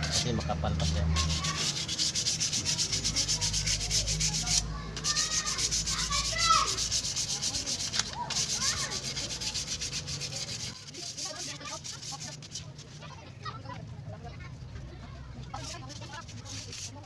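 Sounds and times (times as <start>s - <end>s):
sandpaper scraping brake lining: 0.0s - 13.2s, 15.5s - 17.0s.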